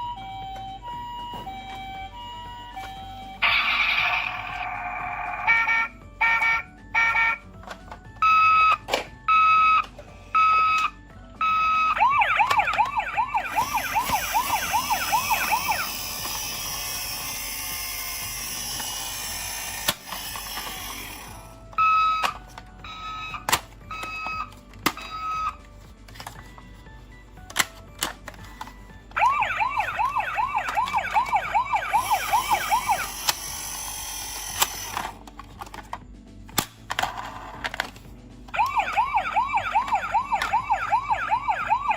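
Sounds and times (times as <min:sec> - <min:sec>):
toy siren beeping tone: 0:00.0 - 0:07.5, 0:08.2 - 0:19.3, 0:20.6 - 0:25.6, 0:28.6 - 0:35.1, 0:38.6 - 0:41.9
warbling electronic siren: 0:01.3 - 0:07.4, 0:11.4 - 0:16.4, 0:29.2 - 0:33.2, 0:38.6 - 0:41.9.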